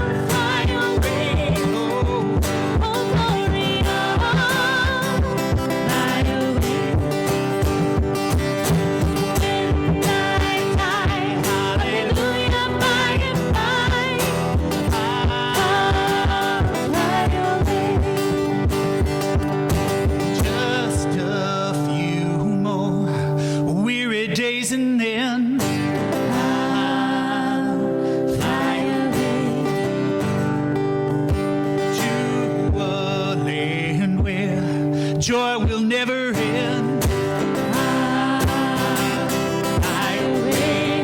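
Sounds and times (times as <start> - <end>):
steady beat: 0.0 - 20.6
person singing with vibrato: 0.0 - 30.9, 31.6 - 41.0
guitar chords: 0.0 - 41.0.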